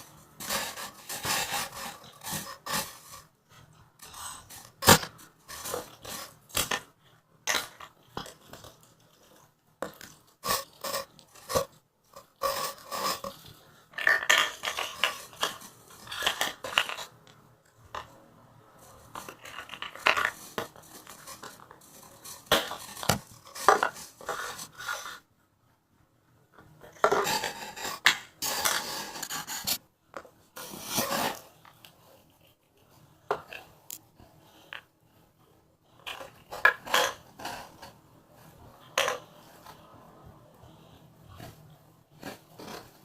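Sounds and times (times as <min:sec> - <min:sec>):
scratchy rubbing of slime: 0:00.0 - 0:07.0, 0:10.0 - 0:17.2, 0:18.8 - 0:25.3, 0:27.2 - 0:29.8, 0:30.6 - 0:32.9.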